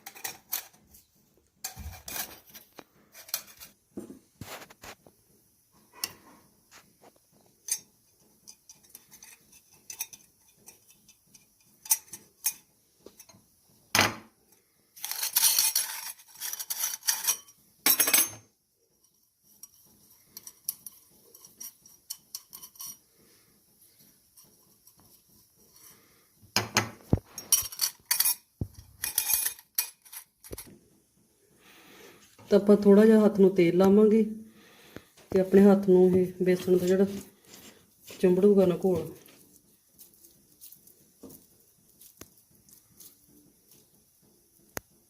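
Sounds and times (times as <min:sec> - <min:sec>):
metal utensils clinking: 0:00.0 - 0:00.9, 0:07.6 - 0:13.4, 0:15.0 - 0:18.5, 0:19.6 - 0:23.0, 0:26.7 - 0:30.7
utensils scraping and rattling: 0:00.0 - 0:03.8, 0:07.6 - 0:13.4, 0:15.0 - 0:18.4, 0:19.6 - 0:23.2, 0:27.1 - 0:30.7, 0:36.2 - 0:40.9.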